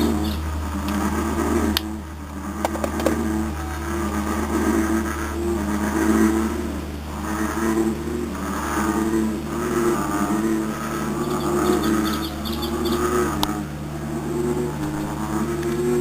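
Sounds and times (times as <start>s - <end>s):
frogs croaking: 0.0s - 16.0s
high chirps: 10.8s - 15.1s.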